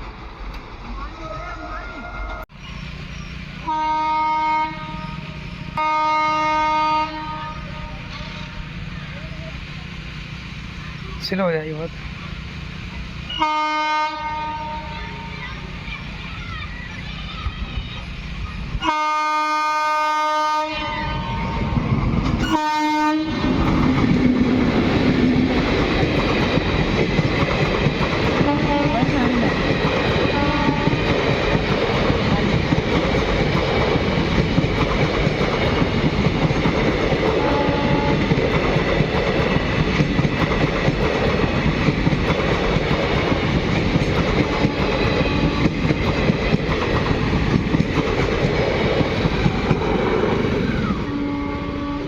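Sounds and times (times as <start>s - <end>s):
train wheels rushing on rail: 0.0s - 52.0s
train horn blasts: 3.6s - 8.8s, 13.3s - 15.4s, 18.8s - 21.8s, 22.4s - 23.6s, 28.4s - 29.4s, 30.2s - 31.1s, 37.3s - 38.4s, 44.7s - 45.8s, 50.9s - 52.0s.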